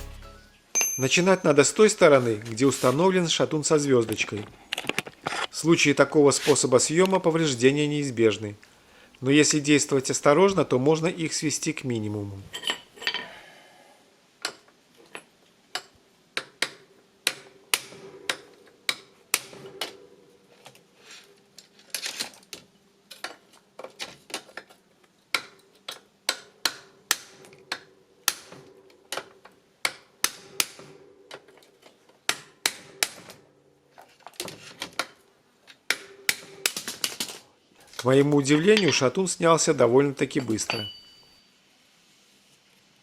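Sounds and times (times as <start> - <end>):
hammer striking metal: 0.0 - 1.8.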